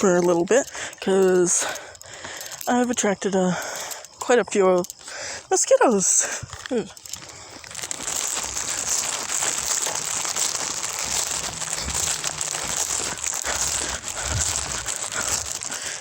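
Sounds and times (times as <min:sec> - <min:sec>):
jogging footsteps: 0:06.1 - 0:16.0
clothing rubbing: 0:07.6 - 0:16.0.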